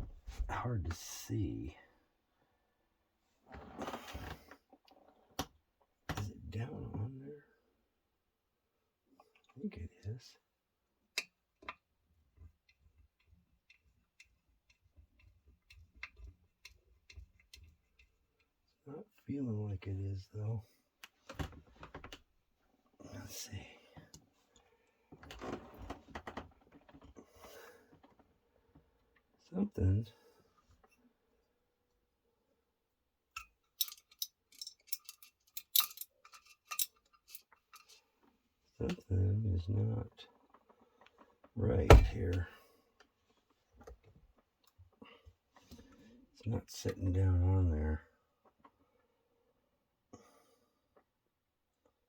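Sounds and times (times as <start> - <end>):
light clicks and taps of parts: 11.1 - 18.6, 33.3 - 38.0
screwdriver and metal parts clicking: 33.4 - 38.0.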